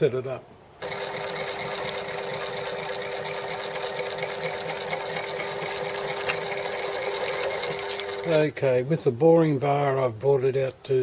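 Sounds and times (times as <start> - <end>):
metal lathe running: 0.8 - 8.4.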